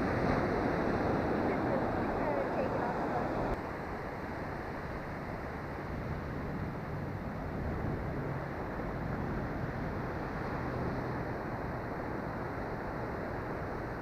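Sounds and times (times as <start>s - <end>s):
wind buffeting microphone: 0.0s - 3.6s
surf rushing: 0.0s - 14.0s.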